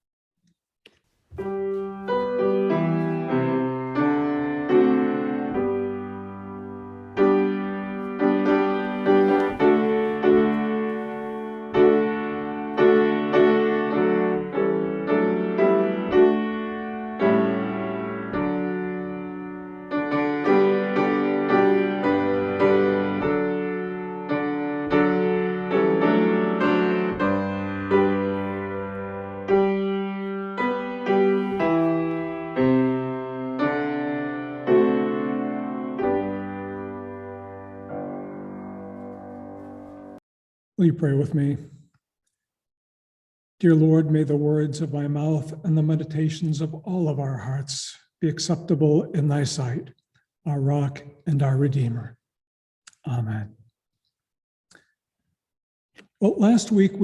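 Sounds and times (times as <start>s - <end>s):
piano music: 1.4s - 40.2s.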